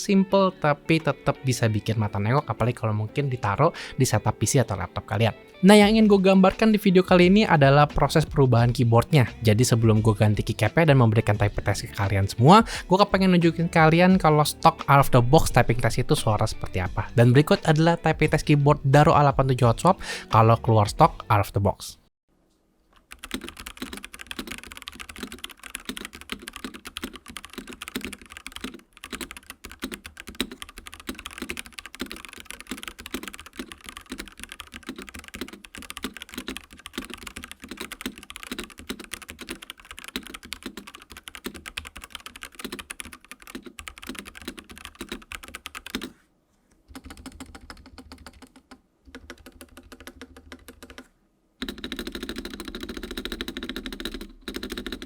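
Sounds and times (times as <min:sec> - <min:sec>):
mechanical keyboard typing: 0:23.1 - 0:46.1, 0:46.9 - 0:55.0.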